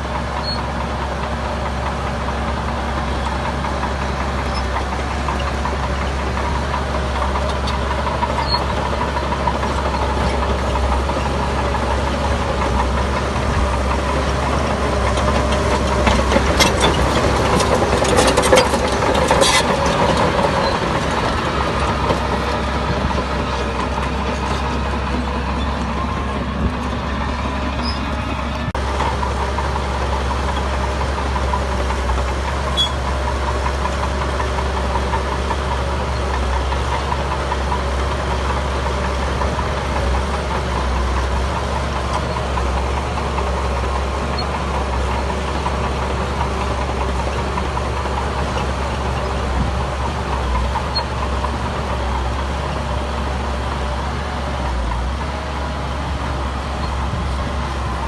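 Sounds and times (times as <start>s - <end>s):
heavy diesel engine running: 0.0s - 58.0s
metallic clanks and rattles: 14.5s - 29.2s.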